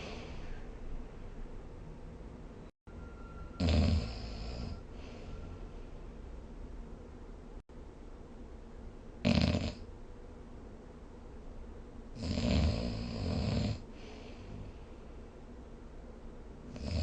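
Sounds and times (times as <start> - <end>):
person snoring: 3.6 - 4.8, 12.2 - 13.8, 16.7 - 17.0.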